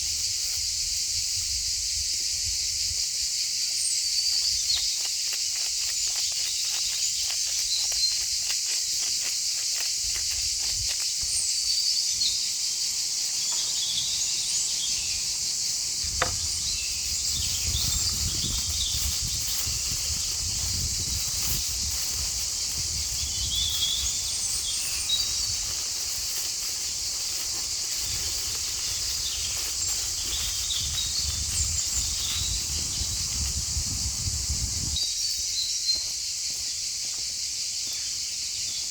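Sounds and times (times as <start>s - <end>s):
high-pitched insect chorus: 0.0s - 38.9s
insect chirps: 0.0s - 38.9s.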